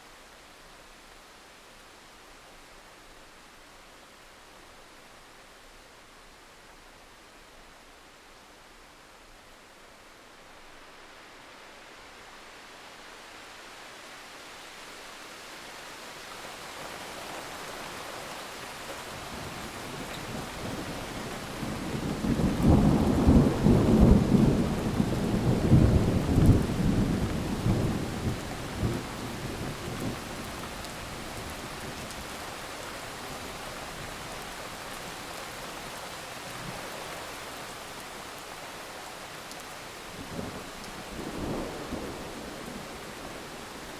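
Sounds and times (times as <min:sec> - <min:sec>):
steady rain: 0:00.0 - 0:43.9
rolling thunder: 0:21.6 - 0:30.2.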